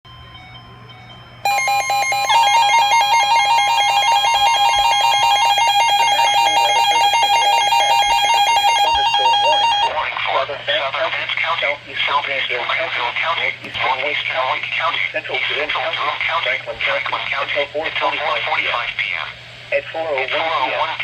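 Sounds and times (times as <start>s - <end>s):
pulsing alarm beeps: 1.5s - 10.0s
steady alert tone: 1.5s - 10.0s.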